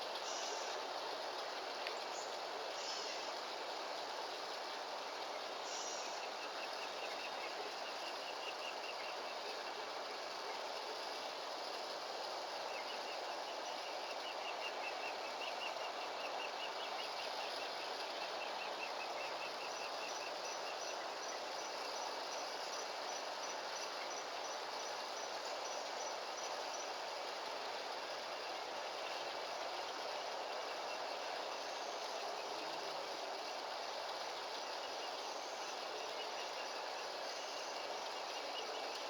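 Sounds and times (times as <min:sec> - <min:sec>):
outdoor background noise: 0:00.0 - 0:39.0.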